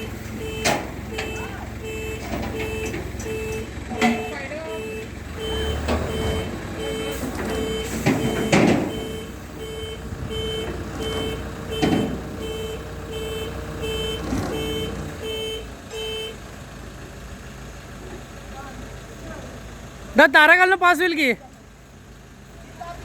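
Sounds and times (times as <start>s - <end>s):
reversing alarm beeps: 0.0s - 16.3s
engine running: 0.0s - 23.0s.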